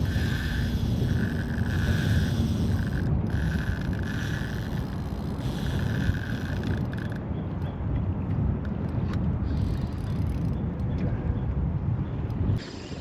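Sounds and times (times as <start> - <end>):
fishing reel whirring: 0.0 - 7.2, 9.4 - 10.6
wind on microphone: 0.0 - 13.0.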